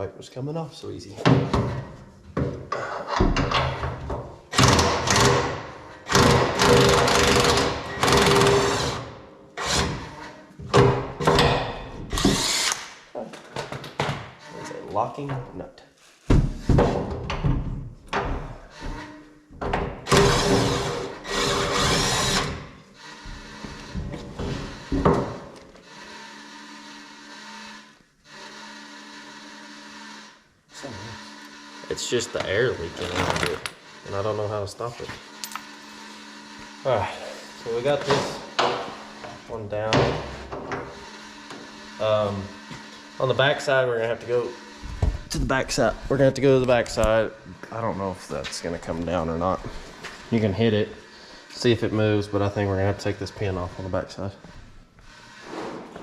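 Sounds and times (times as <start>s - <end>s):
power tool running in bursts: 4.6s - 10.3s, 12.2s - 12.9s, 20.1s - 24.0s, 24.6s - 34.6s, 35.2s - 39.5s, 40.3s - 47.1s.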